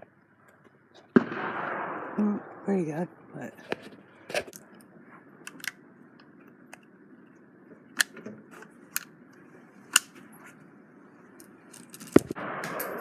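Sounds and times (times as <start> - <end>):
gunshots: 1.1 - 3.7, 12.2 - 13.0.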